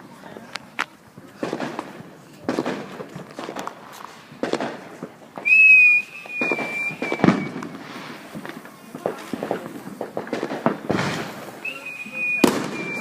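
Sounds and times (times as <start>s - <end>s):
firework pops and crackles: 0.0s - 13.0s
firework bang: 1.4s - 13.0s
shrill firework whistle: 5.4s - 7.7s, 11.6s - 13.0s.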